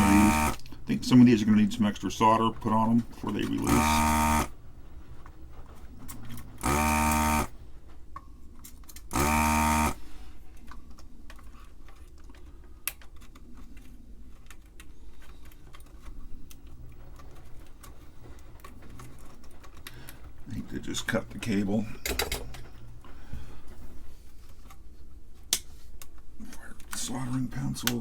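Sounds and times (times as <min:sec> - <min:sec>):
desoldering pump buzzing: 0:00.0 - 0:01.4, 0:02.6 - 0:04.6, 0:06.4 - 0:07.6, 0:09.1 - 0:10.2.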